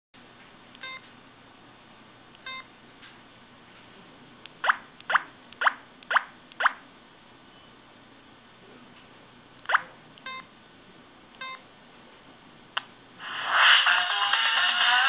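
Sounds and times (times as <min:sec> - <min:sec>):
downward-sliding electronic blips: 0:13.2 - 0:15.0.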